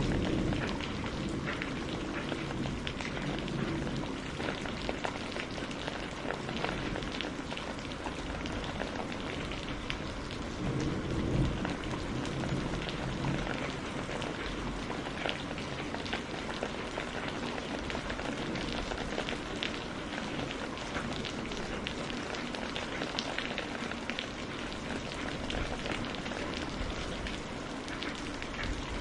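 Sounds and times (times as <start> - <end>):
raindrops ticking: 0.0 - 29.0
steady rain falling: 0.0 - 29.0.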